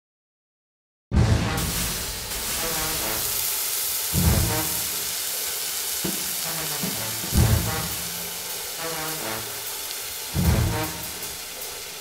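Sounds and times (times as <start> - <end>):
food sizzling in a pan: 1.5 - 12.0
low bass hits: 4.2 - 4.6, 7.3 - 8.0
intro music: 6.6 - 9.8.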